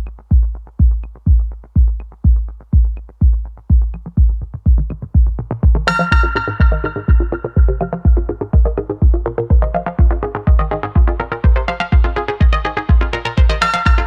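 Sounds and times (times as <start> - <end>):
deep kick drum: 0.0 - 14.0
electronic dance music: 0.0 - 14.0
bright synth chord: 5.9 - 8.5.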